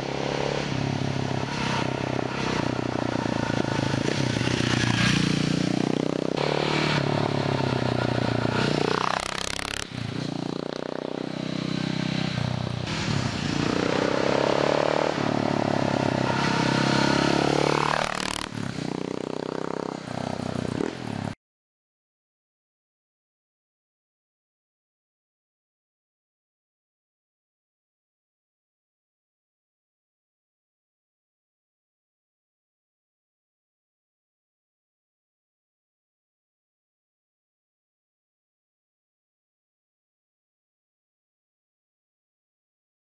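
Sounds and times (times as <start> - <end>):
motorcycle engine revving: 0.0 - 21.4.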